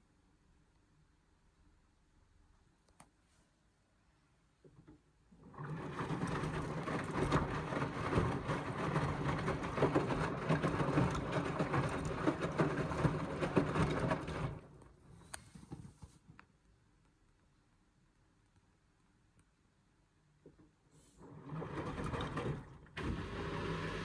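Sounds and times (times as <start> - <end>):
laundry and water sloshing: 5.4 - 14.6
washing machine motor humming: 5.4 - 14.8, 21.2 - 24.0.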